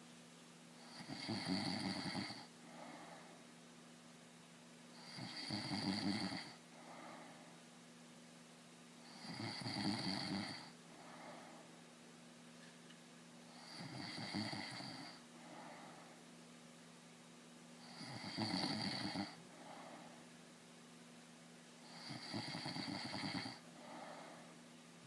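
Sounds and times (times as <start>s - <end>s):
man snoring: 0.8s - 2.5s, 5.0s - 7.1s, 9.1s - 11.2s, 13.6s - 15.2s, 17.8s - 19.4s, 21.9s - 24.4s
soft breath: 2.6s - 3.6s, 6.6s - 7.7s, 10.6s - 11.8s, 15.0s - 16.3s, 19.4s - 20.4s, 23.6s - 24.7s.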